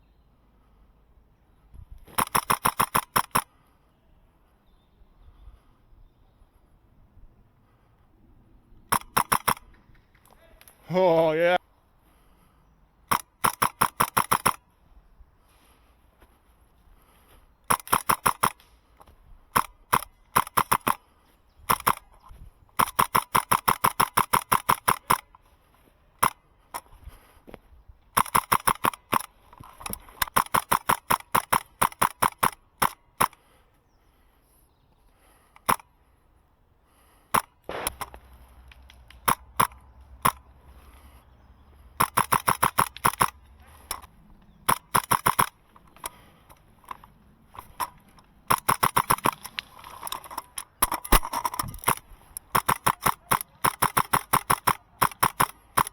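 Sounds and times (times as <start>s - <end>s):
airsoft rifle firing pops: 2.0s - 3.5s, 8.9s - 10.4s, 13.1s - 14.6s, 17.7s - 21.0s, 21.6s - 22.1s, 37.3s - 40.5s, 42.0s - 46.2s, 46.8s - 55.9s.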